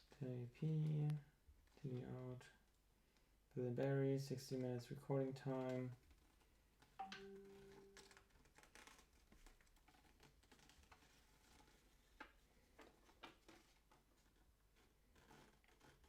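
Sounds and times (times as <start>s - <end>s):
paper manual rustling and clicking: 7.8s - 16.0s.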